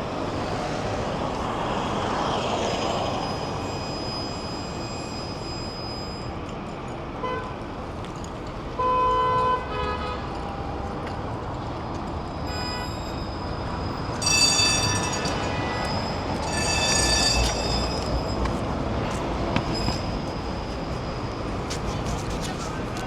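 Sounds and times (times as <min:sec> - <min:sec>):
city street traffic: 0:00.0 - 0:23.0
metallic squealing from vehicle: 0:02.8 - 0:06.5, 0:12.4 - 0:21.4.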